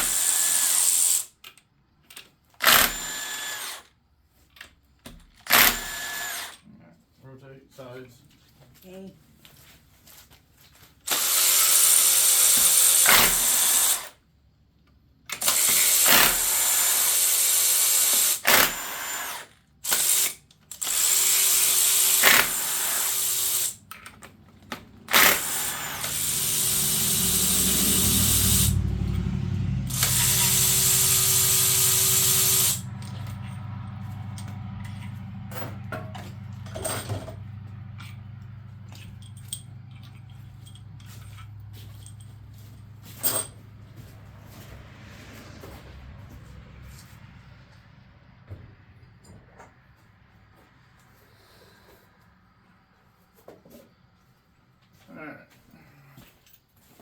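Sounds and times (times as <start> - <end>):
cordless power tool running: 0.0 - 1.2, 2.6 - 3.9, 5.5 - 6.6, 11.1 - 14.1, 15.4 - 23.8, 24.9 - 35.7.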